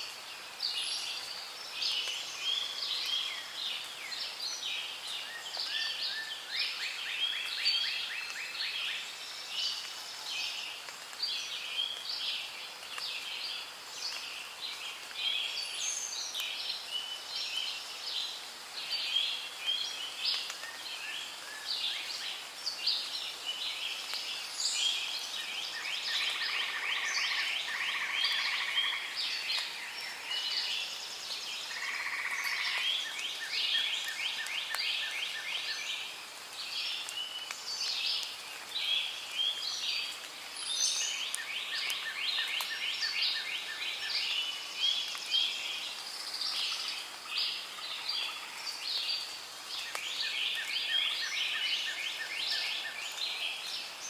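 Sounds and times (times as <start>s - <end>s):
chorus of bird calls: 18.9s - 54.0s.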